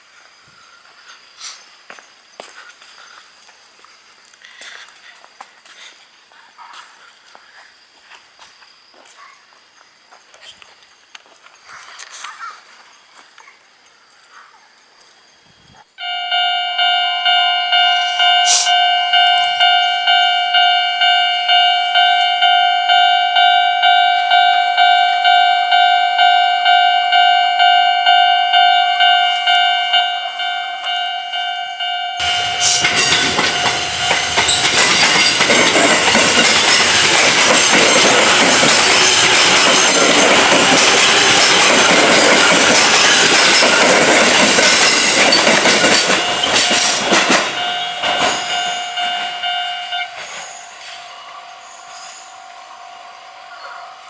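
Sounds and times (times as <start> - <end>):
train wheel clatter: 32.2 - 51.1.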